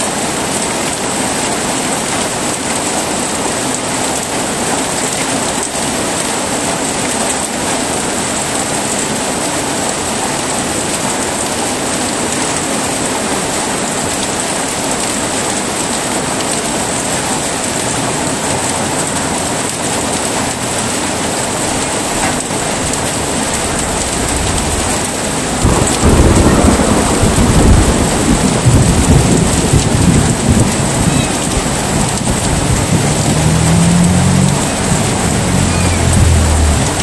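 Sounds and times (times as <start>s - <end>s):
heavy rain: 0.0s - 37.0s
thunder rumbling: 20.4s - 37.0s.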